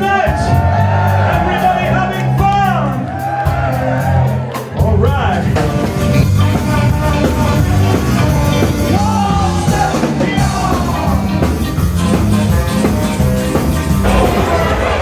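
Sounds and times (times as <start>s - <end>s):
ska band playing: 0.0s - 15.0s.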